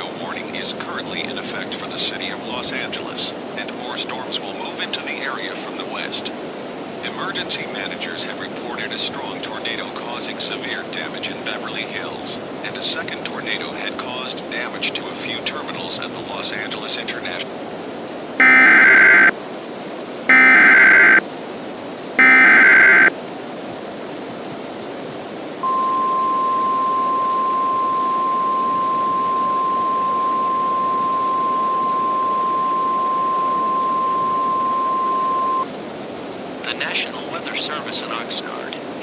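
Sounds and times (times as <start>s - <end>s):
faint radio hiss: 0.0s - 39.0s
screechy digital data bursts: 18.4s - 19.3s, 20.3s - 21.2s, 22.2s - 23.1s
steady warning alarm tone: 18.4s - 19.3s, 20.3s - 21.2s, 22.2s - 23.1s, 25.6s - 35.7s.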